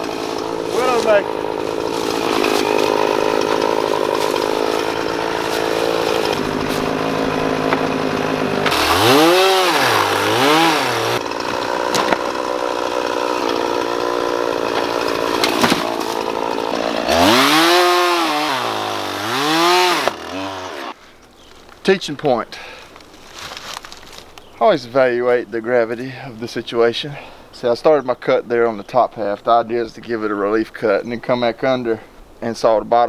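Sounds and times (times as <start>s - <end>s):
chainsaw engine revving: 0.0s - 21.0s.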